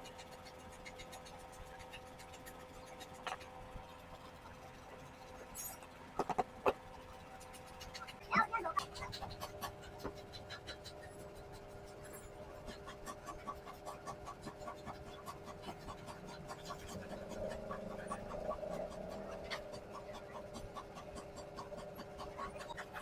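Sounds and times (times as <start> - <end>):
rhythmic hand scraping strokes: 6.8 - 23.0.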